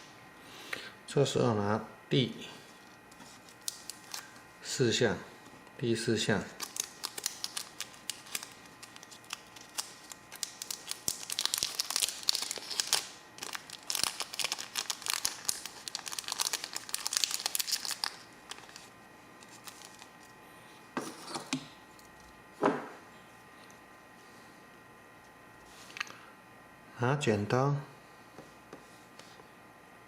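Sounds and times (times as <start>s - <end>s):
packaging crinkling: 3.3s - 4.4s, 6.5s - 20.3s.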